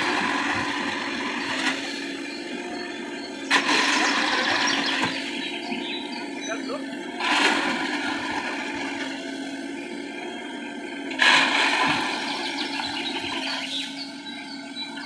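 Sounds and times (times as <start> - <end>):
machine engine running: 0.0 - 15.0.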